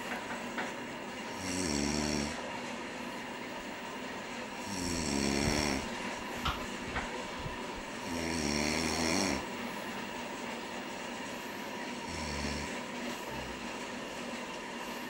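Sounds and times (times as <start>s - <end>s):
man snoring: 1.3s - 2.4s, 4.6s - 6.0s, 8.0s - 9.5s, 12.0s - 13.6s
background hum: 3.7s - 10.4s.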